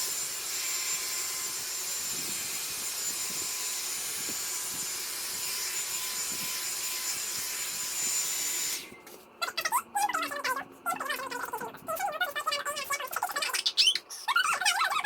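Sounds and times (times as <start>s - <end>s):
hot air brush blowing: 0.0s - 8.9s.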